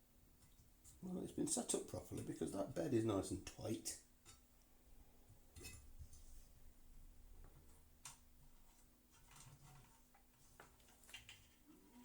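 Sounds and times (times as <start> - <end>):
faint clicks of small parts: 7.4 - 12.0.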